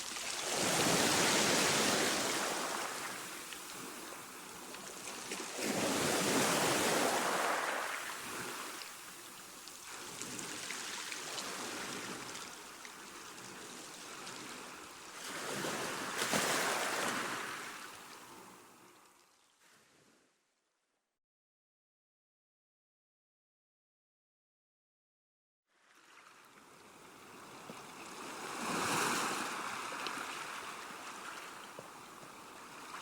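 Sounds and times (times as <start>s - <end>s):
sea waves breaking on shore: 0.0s - 18.8s, 26.0s - 33.0s.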